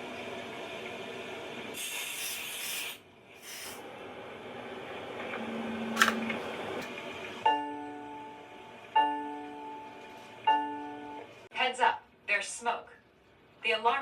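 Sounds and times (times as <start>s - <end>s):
aerosol spray hissing: 1.8s - 3.8s.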